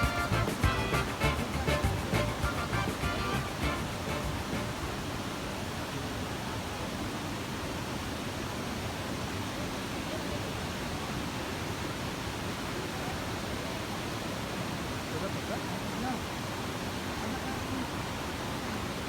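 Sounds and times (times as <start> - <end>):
rushing water: 0.0 - 19.0.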